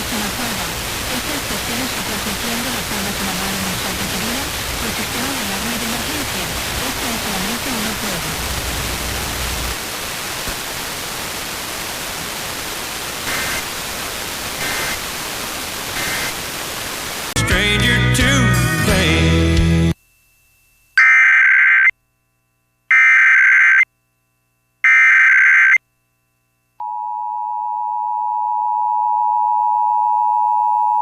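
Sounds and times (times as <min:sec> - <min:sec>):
faint voice: 0:00.0 - 0:08.6
radio static hiss: 0:00.0 - 0:17.4
loud music: 0:17.4 - 0:20.0.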